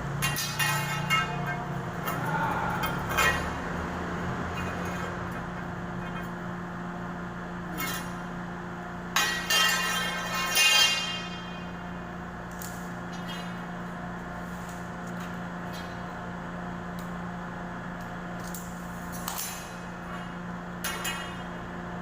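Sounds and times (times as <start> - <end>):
steady low hum: 0.0 - 22.0
metal clinking and ringing: 9.2 - 11.7.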